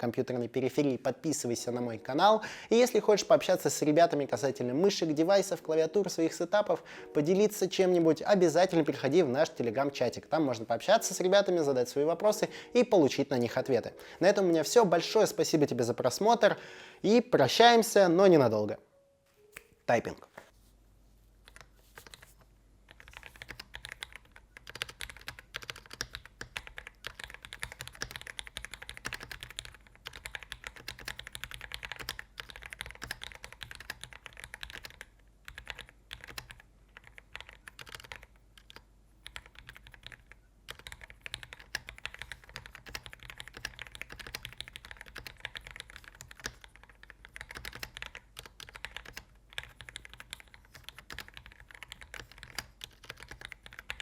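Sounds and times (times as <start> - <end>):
mechanical keyboard typing: 21.4 - 22.3, 22.9 - 54.0.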